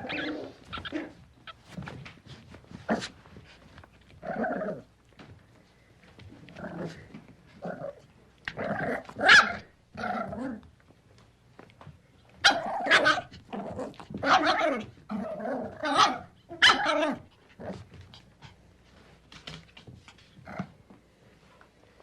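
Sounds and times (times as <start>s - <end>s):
puppy barking and yapping: 0.0s - 1.8s, 8.8s - 10.3s, 12.4s - 13.5s, 14.1s - 15.0s, 15.6s - 17.3s.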